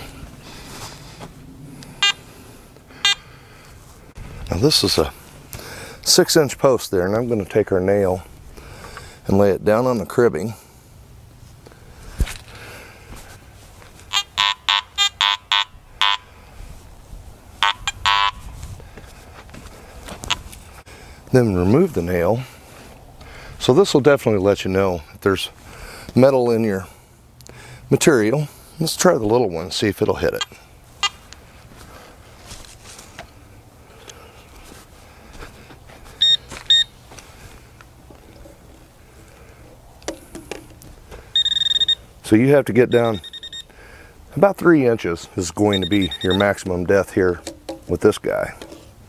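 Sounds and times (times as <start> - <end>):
metal detector short beeps: 2.0 - 2.2, 14.1 - 16.3, 17.6 - 18.5, 30.4 - 31.2, 36.2 - 37.0, 41.4 - 42.1, 42.9 - 43.7, 45.6 - 46.6
metal detector long buzz: 14.1 - 16.3, 17.6 - 18.4.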